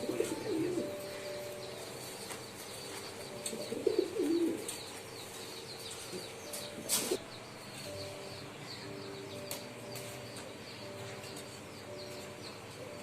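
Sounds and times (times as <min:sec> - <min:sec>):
pigeons cooing: 0:00.0 - 0:07.3
faint high bird chirps: 0:00.0 - 0:13.0.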